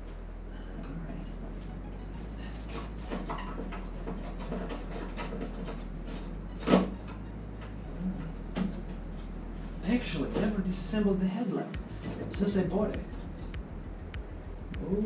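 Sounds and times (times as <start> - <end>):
steady low hum: 0.0 - 15.0
metal parts clicking and knocking: 2.5 - 7.8.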